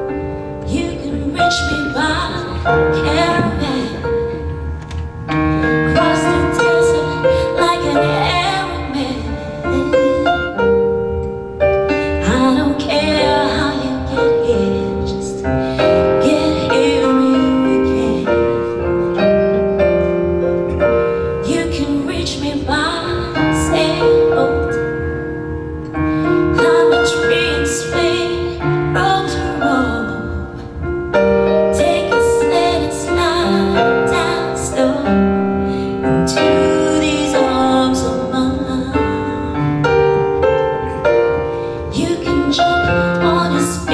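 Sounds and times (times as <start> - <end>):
piano accompaniment: 0.0 - 43.9
person singing slow song: 0.6 - 11.3.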